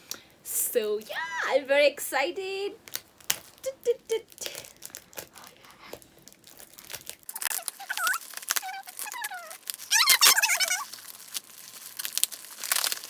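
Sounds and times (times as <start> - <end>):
packaging torn and crinkled: 2.8 - 13.0
short squeals: 7.3 - 11.0.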